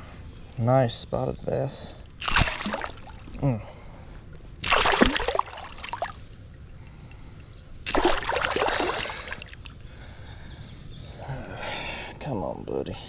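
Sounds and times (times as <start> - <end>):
fish splashing in water: 2.2 - 3.4, 4.6 - 6.4, 7.8 - 9.8.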